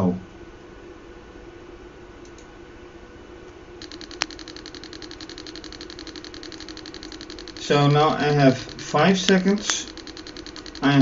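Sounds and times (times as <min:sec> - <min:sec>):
low hum: 0:03.7 - 0:11.0
speaker crackling clicks: 0:03.8 - 0:11.0.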